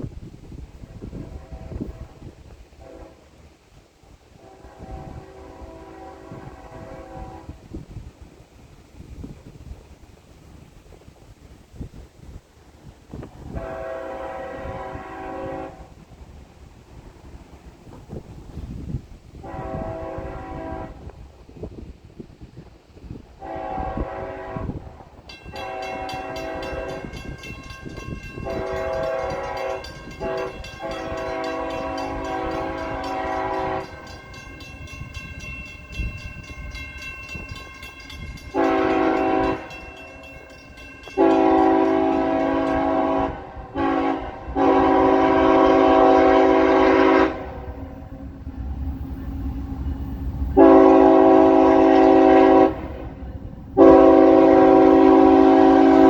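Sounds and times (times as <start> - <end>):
locomotive air horn blasts: 0.9 - 3.4, 4.3 - 7.8, 13.4 - 16.0, 19.4 - 21.2, 23.4 - 36.2, 38.1 - 40.3, 41.0 - 48.4, 50.6 - 56.0.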